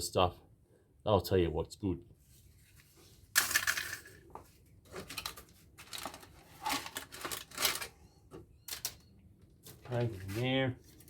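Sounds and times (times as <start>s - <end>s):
hands handling scrap parts: 3.3s - 8.0s.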